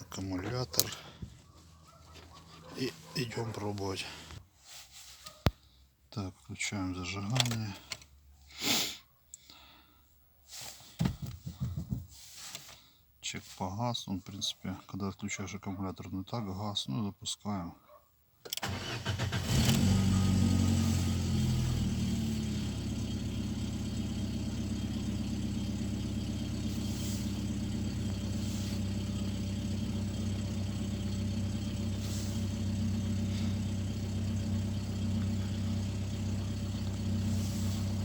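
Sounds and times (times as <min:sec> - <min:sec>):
car engine starting and idling: 0:00.0 - 0:04.4, 0:18.5 - 0:38.0.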